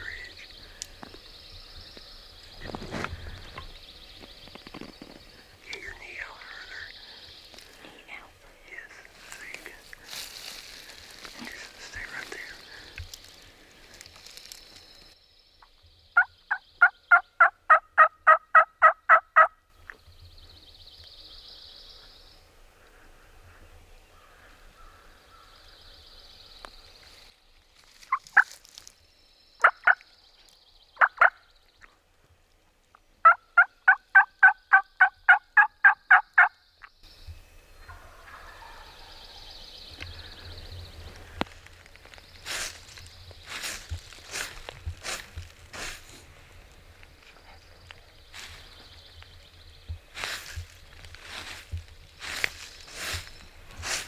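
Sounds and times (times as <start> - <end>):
turkey yelping: 16.2 - 19.5, 33.2 - 36.5, 37.9 - 39.5.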